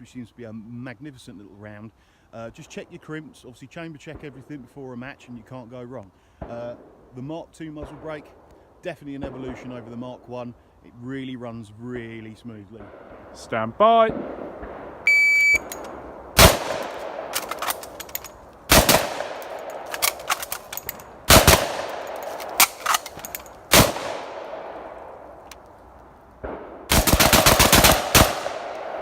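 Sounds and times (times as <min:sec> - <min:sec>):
shot timer beep: 0:15.1 - 0:15.7
gun clicks and clanks: 0:15.6 - 0:24.6, 0:25.4 - 0:25.8
shotgun shots with echo: 0:16.4 - 0:17.7, 0:18.7 - 0:20.2, 0:21.3 - 0:25.0, 0:26.4 - 0:29.0.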